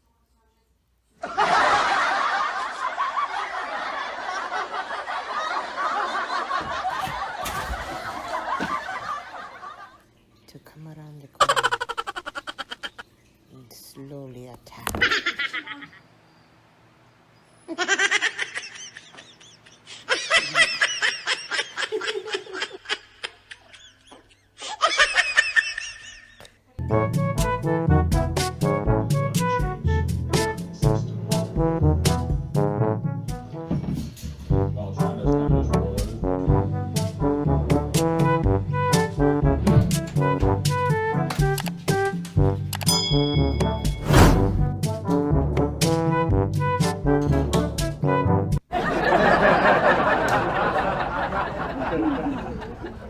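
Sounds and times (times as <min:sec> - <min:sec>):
people laughing: 0:01.2 - 0:10.0, 0:17.8 - 0:26.4, 0:48.7 - 0:53.0
person laughing hard: 0:17.8 - 0:26.2
low thumps: 0:44.0 - 0:44.8.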